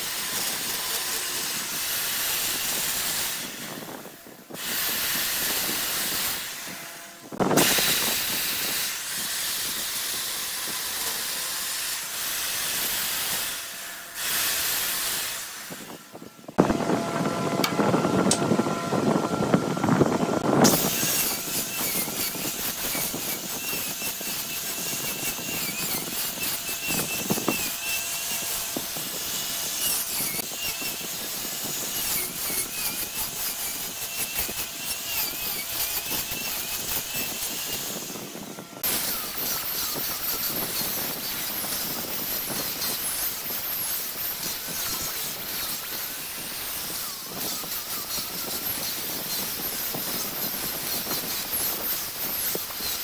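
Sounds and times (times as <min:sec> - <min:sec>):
wood lathe turning: 0:00.0 - 0:53.0
cutting tool scraping wood: 0:20.4 - 0:53.0.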